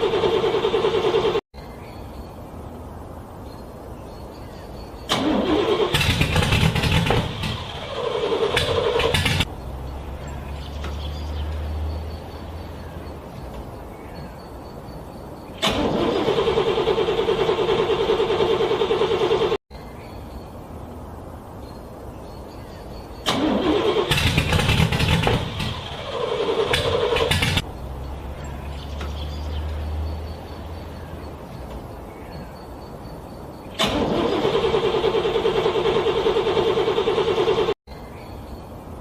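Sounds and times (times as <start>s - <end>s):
car starter motor cranking: 0.0s - 1.4s, 5.1s - 9.5s, 15.6s - 19.6s, 23.2s - 27.6s, 33.7s - 37.8s.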